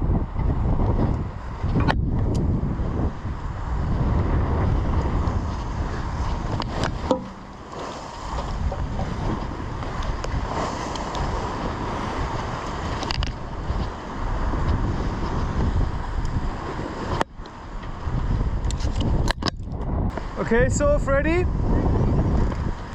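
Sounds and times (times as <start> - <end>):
sea rushing past hull: 0.0 - 22.9
wind buffeting microphone: 0.0 - 22.9
sharp knock: 7.1 - 7.6.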